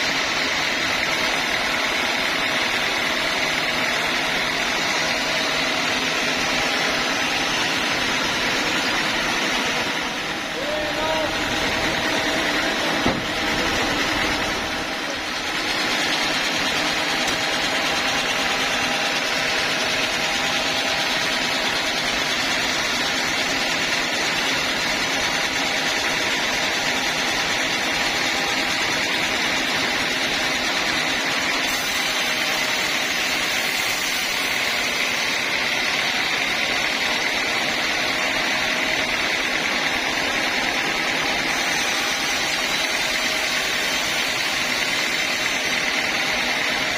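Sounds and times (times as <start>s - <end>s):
band saw cutting log: 0.0s - 46.9s.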